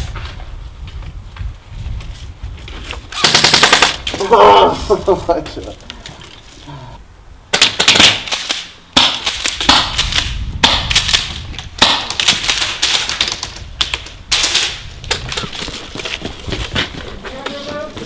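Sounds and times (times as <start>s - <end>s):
airsoft guns firing: 3.2s - 4.1s, 7.5s - 14.9s.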